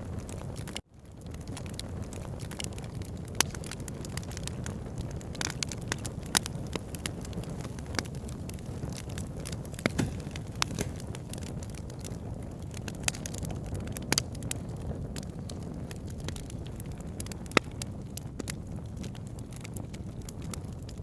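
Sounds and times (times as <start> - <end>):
campfire crackling: 0.0 - 21.0
fire low rumble: 0.0 - 21.0.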